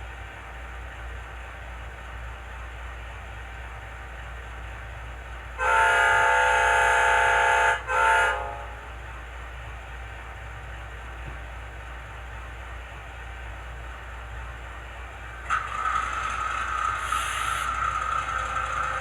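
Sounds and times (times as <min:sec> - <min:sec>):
low idling engine hum: 0:00.0 - 0:19.0
diesel locomotive air horn: 0:05.5 - 0:09.1, 0:17.0 - 0:19.0.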